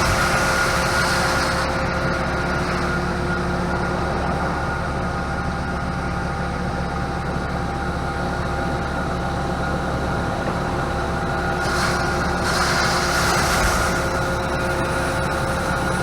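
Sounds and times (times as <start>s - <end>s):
heavy engine humming: 0.0s - 16.0s
hiss: 11.6s - 14.3s.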